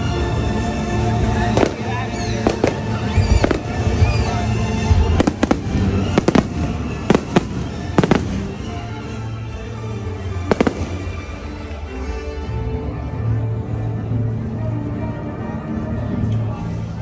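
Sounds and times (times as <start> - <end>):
music playing: 0.0 - 17.0
fireworks bangs: 1.5 - 8.8, 10.4 - 11.4.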